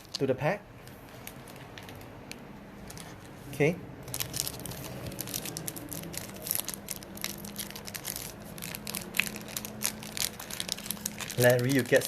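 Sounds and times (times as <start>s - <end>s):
card pack wrapper crinkling: 4.0s - 12.0s.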